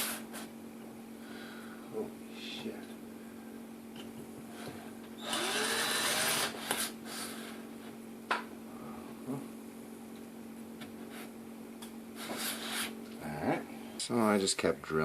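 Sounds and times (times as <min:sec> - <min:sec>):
drill motor running: 0:05.2 - 0:06.8.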